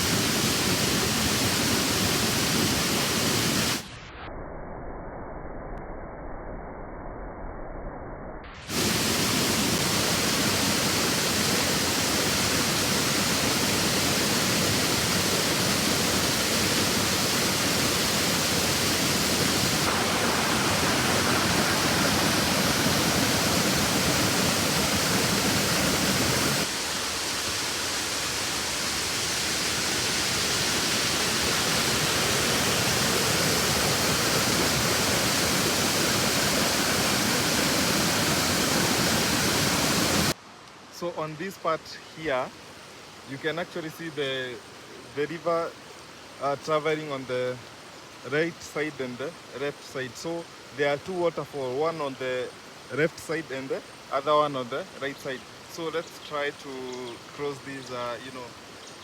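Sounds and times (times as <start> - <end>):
river water rushing over rocks: 0.0 - 3.8, 8.7 - 40.4.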